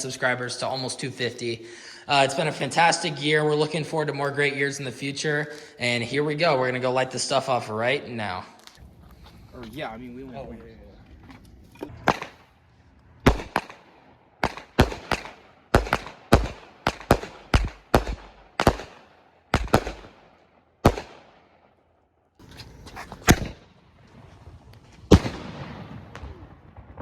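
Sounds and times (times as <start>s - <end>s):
fireworks bangs: 11.9s - 12.6s, 13.2s - 21.4s, 22.4s - 27.0s.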